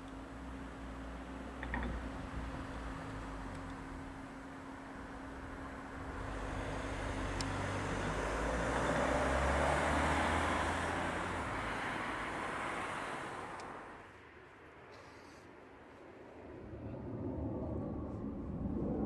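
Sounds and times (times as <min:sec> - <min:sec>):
vehicle passing by: 0:05.9 - 0:14.0.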